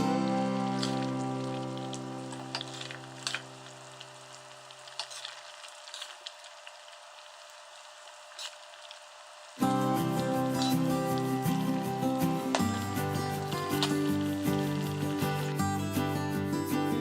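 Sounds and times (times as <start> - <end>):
music: 0.0 - 4.4, 9.6 - 17.0
crackles and pops: 0.0 - 15.8
food frying in oil: 0.0 - 16.6.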